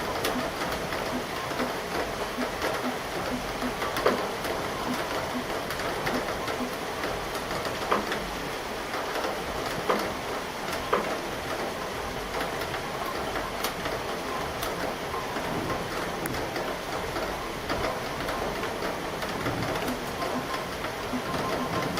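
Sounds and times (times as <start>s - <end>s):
steady rain falling: 0.0s - 21.9s
raindrops tapping a surface: 8.9s - 10.1s, 10.7s - 11.7s.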